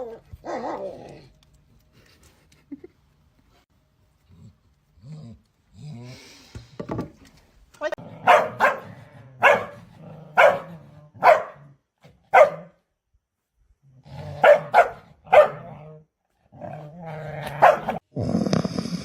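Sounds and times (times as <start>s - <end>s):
dog barking: 8.2s - 11.7s, 12.3s - 12.8s, 14.4s - 15.8s, 17.6s - 18.0s.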